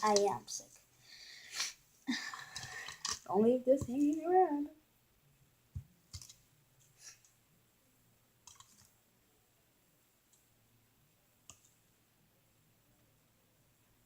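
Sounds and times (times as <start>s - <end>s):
plastic cups clicking and tapping: 2.4s - 4.2s.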